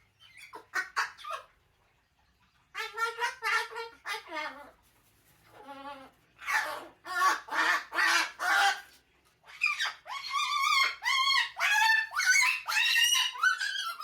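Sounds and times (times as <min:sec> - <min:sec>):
cockatoo squawking calls: 0:05.6 - 0:14.0.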